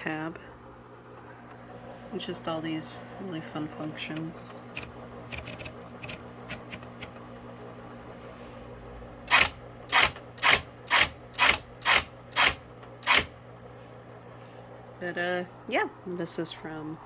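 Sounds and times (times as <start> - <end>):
electric typewriter motor humming: 4.1 - 8.1, 9.2 - 13.5
loud typing strokes: 4.7 - 7.2, 9.3 - 13.3.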